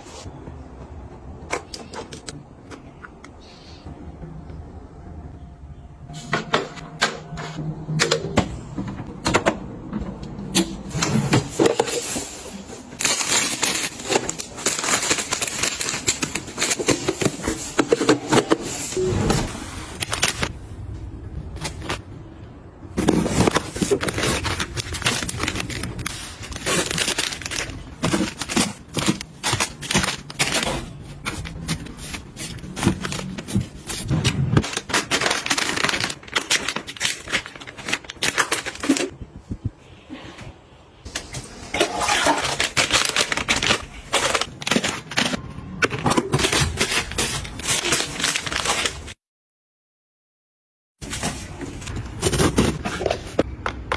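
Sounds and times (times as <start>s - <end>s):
small objects being unpacked: 10.9s - 20.6s, 23.0s - 39.2s, 41.1s - 49.2s.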